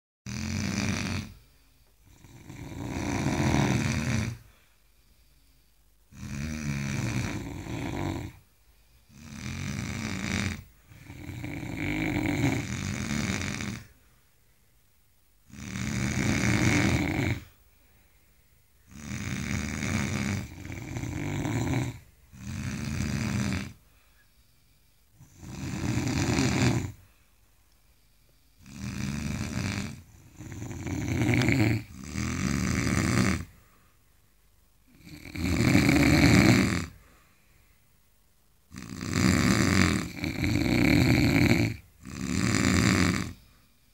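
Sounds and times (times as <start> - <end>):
men snoring: 0.3 - 1.4, 2.0 - 4.4, 6.1 - 8.4, 9.1 - 13.9, 15.5 - 17.5, 18.9 - 23.8, 25.2 - 27.0, 28.6 - 33.6, 34.9 - 37.0, 38.7 - 43.5.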